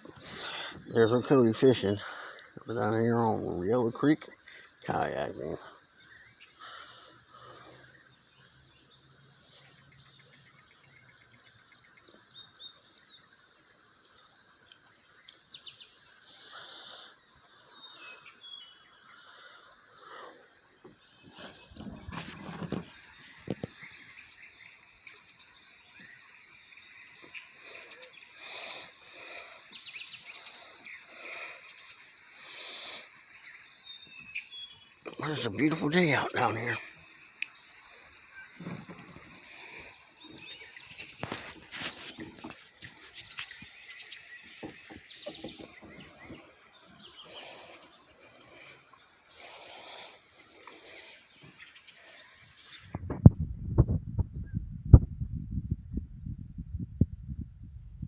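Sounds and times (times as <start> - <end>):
high insect-like hiss: 0.0 - 53.2
songbirds singing and chirping: 0.0 - 55.0
dull low knocks: 53.0 - 58.0.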